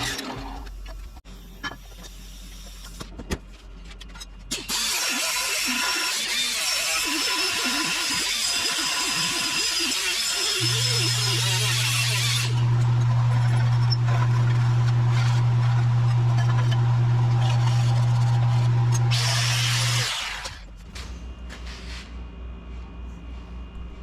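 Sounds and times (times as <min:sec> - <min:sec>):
power tool hiss with high whine: 0:04.8 - 0:12.8.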